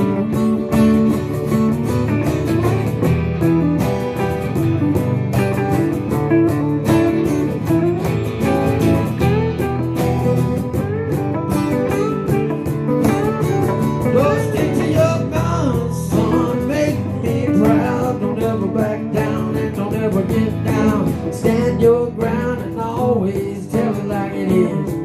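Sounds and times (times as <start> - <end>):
lead guitar bending melody: 0.0 - 25.0
strummed acoustic guitars: 0.0 - 25.0.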